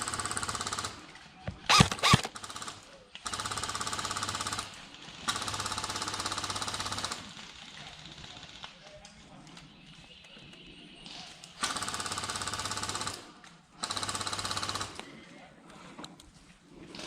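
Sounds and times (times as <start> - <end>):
airsoft gun firing full auto: 0.0 - 4.7, 11.6 - 15.0.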